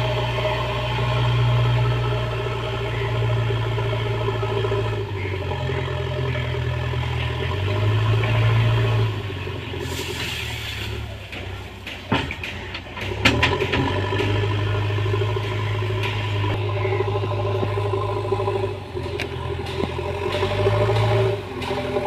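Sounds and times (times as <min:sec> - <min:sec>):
diesel engine running: 0:00.0 - 0:22.0.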